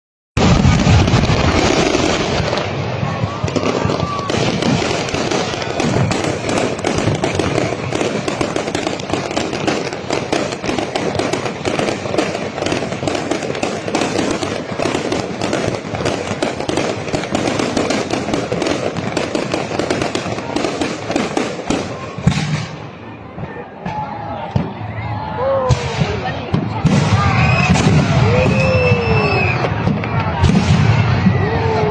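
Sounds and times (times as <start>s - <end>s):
fireworks crackling: 0.4s - 25.0s, 25.7s - 31.9s.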